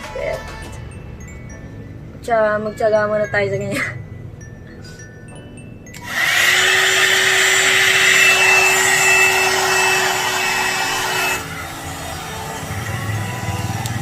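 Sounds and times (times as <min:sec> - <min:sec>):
hair dryer blowing with whine: 0:06.0 - 0:14.0.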